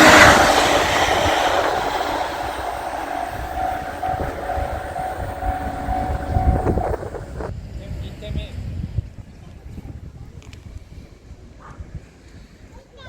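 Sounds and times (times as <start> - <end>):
crossing warning bell ringing: 0.0 - 7.4
train running past: 0.0 - 7.5.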